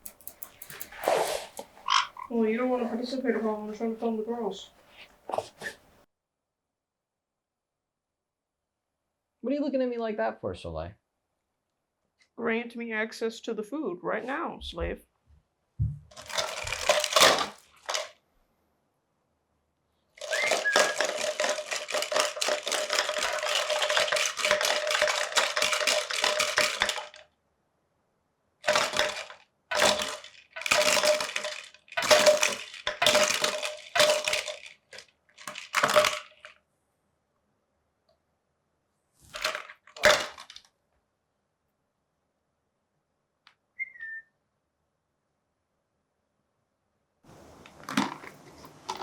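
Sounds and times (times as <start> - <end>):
beaks clattering on plastic bottle: 0.0 - 3.6, 16.1 - 18.1, 20.2 - 27.2, 28.6 - 36.5, 39.3 - 40.7, 47.3 - 49.0
parrot chirp: 1.1 - 2.4, 43.8 - 44.3.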